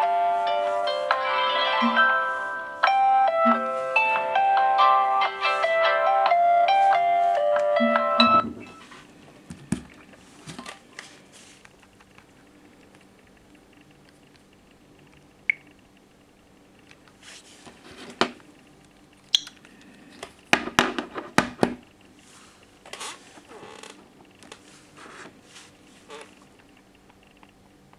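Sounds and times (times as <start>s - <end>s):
high chirp: 19.3s - 19.6s.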